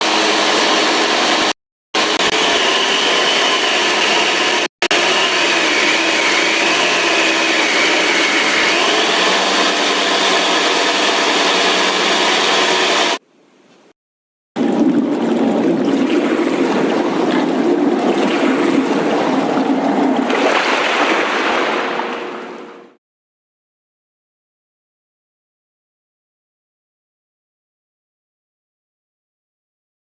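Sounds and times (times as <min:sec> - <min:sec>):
belt sander grinding: 0:00.0 - 0:13.2.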